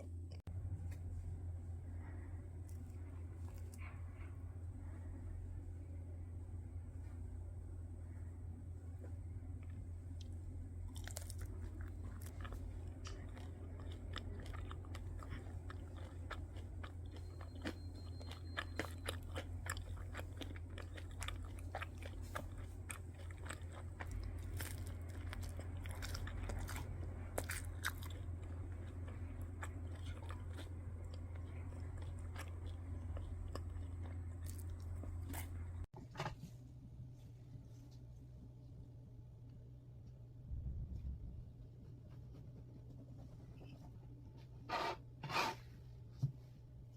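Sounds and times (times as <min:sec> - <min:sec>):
steady low hum: 0:00.0 - 0:46.9
person chewing crunchy food: 0:09.5 - 0:35.9.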